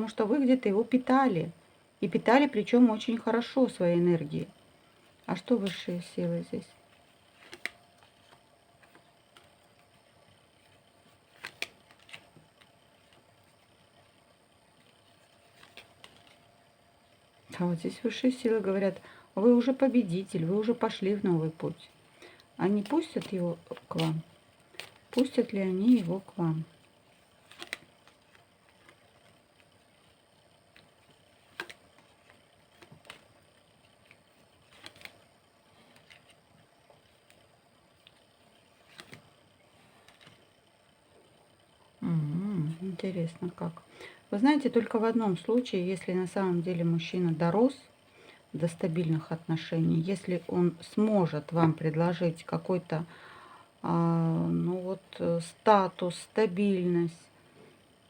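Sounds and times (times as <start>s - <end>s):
cards tapping and flicking: 7.3s - 9.9s, 10.6s - 13.3s, 14.8s - 16.4s, 22.2s - 26.1s, 26.8s - 29.9s, 30.7s - 38.2s, 38.8s - 39.4s
cards snapping and sliding: 7.4s - 9.5s, 11.3s - 12.3s, 27.5s - 29.0s, 31.4s - 33.2s, 34.6s - 35.2s, 38.8s - 39.3s.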